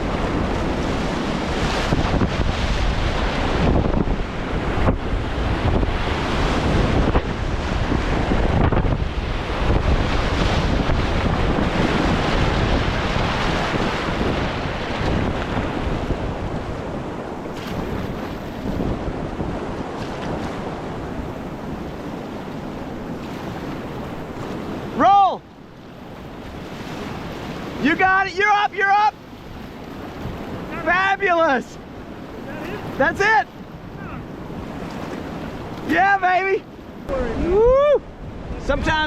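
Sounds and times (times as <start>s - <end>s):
whitewater river rapid roaring: 0.0s - 39.0s
wind buffeting microphone: 0.0s - 39.0s.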